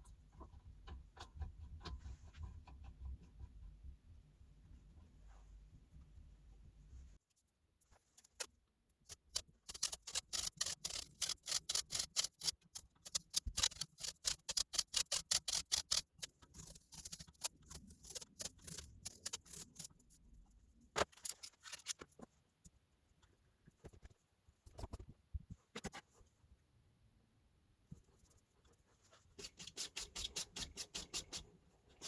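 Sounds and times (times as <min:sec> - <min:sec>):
sharp mechanical clicks: 0:09.1 - 0:19.8.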